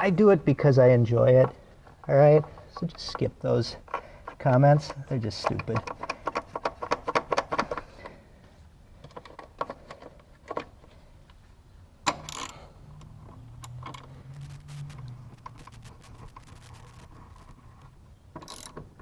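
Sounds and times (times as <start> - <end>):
tools and parts knocking: 5.4 - 7.8
socket ratchet clicking: 18.4 - 18.8.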